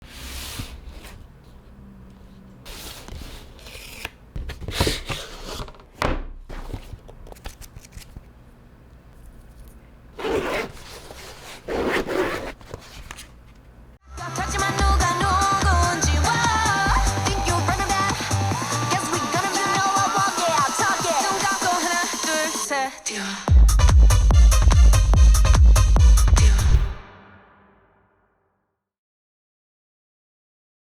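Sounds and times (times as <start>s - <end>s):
packaging scraping and tearing: 2.6s - 5.9s, 6.5s - 8.2s, 9.4s - 13.6s.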